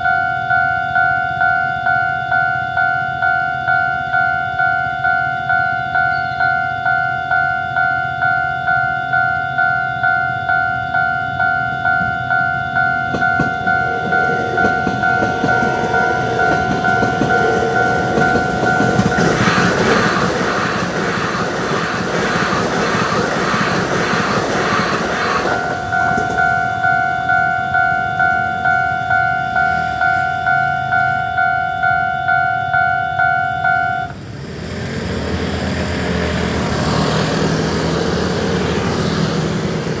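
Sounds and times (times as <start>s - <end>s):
level crossing bell dinging: 0.0s - 19.5s, 25.5s - 34.1s
train rumble: 2.4s - 40.0s
steady vehicle noise: 10.0s - 40.0s
wheels clattering over rail joints: 13.0s - 28.8s.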